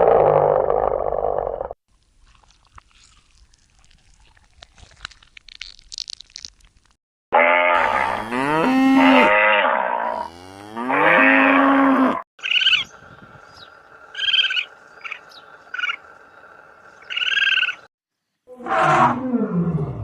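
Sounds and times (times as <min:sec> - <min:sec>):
cow mooing: 0:07.4 - 0:12.2
gull calling: 0:12.4 - 0:13.0.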